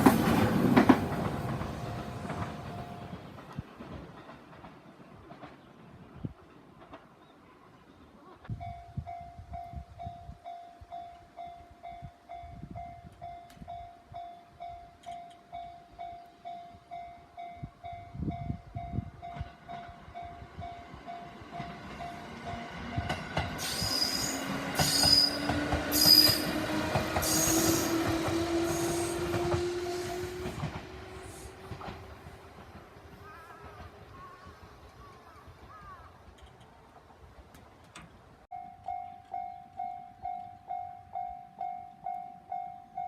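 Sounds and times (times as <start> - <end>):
train wheel clacks: 0.0 - 5.7, 21.2 - 34.5
train motor hum: 24.3 - 35.2.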